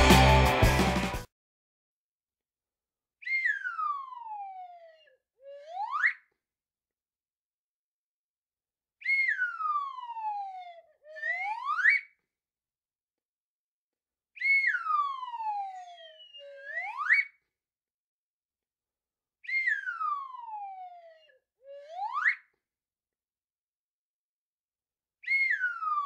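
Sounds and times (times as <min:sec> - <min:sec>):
toy whistle gliding in pitch: 0:03.3 - 0:06.3, 0:09.0 - 0:12.2, 0:14.4 - 0:17.4, 0:19.4 - 0:22.6, 0:25.2 - 0:26.0.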